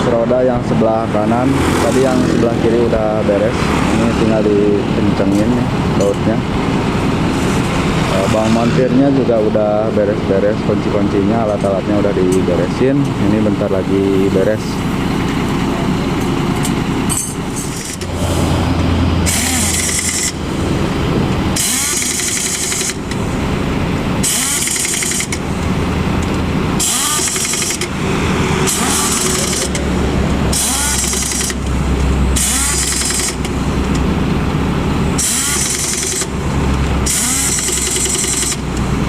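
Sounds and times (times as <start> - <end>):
truck engine idling: 0.0 - 39.0
pneumatic impact wrench bursts: 17.1 - 18.6, 19.2 - 20.6, 21.5 - 23.4, 24.2 - 25.6, 26.7 - 33.9, 35.1 - 39.0.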